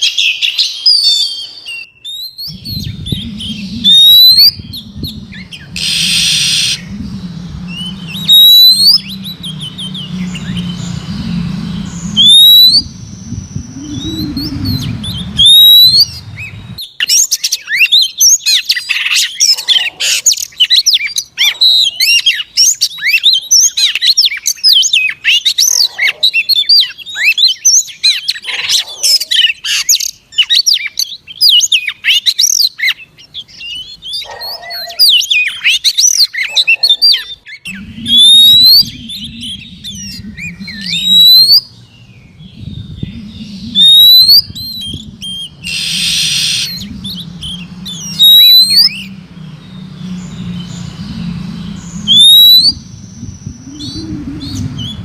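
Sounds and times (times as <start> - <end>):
fast chirping birdsong: 0.0 - 55.0
low hum: 2.4 - 16.8, 37.7 - 55.0.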